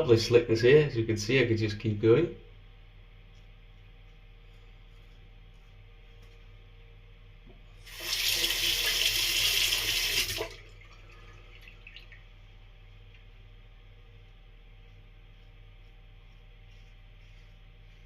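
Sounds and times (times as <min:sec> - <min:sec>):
tap water running into sink: 0:07.9 - 0:12.3.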